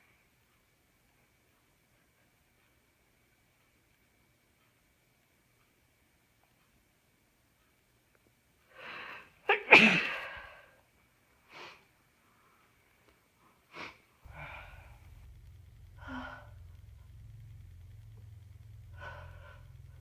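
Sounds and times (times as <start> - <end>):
short breaths: 8.7 - 9.4, 13.7 - 15.3, 15.9 - 16.8
woman sneezing: 9.5 - 10.4
low steady rumble: 14.2 - 20.0.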